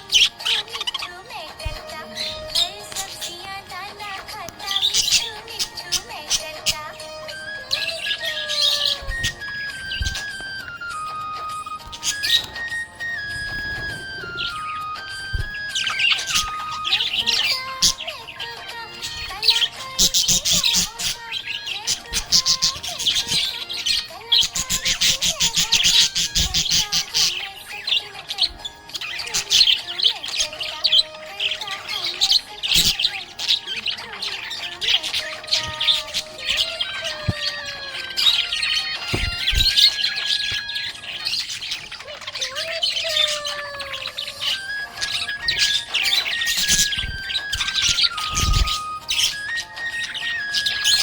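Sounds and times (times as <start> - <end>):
budgerigar chattering and warbling: 0.0 - 51.0.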